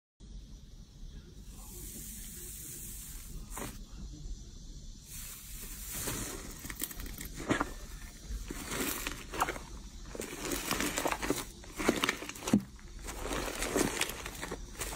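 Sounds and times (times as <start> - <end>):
steady hiss: 0.2 - 14.9
slime crackling and squishing: 5.6 - 14.9.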